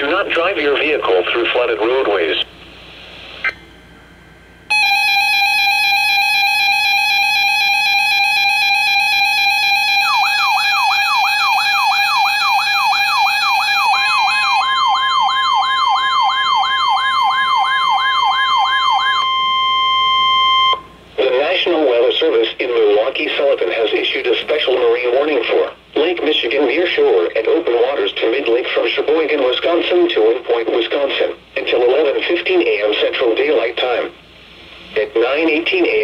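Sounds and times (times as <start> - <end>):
siren wail: 4.7 - 20.8
buzzy alarm tone: 4.7 - 20.9.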